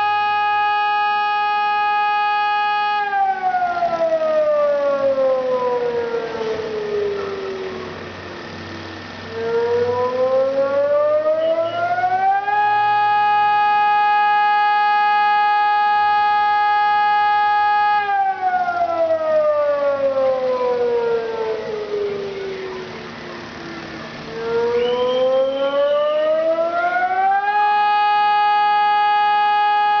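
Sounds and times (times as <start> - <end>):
warning siren wailing: 0.0 - 30.0.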